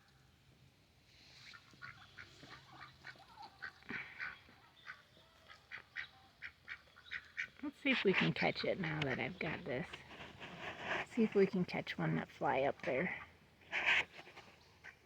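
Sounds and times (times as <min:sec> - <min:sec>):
ducks quacking softly: 0:01.4 - 0:15.0.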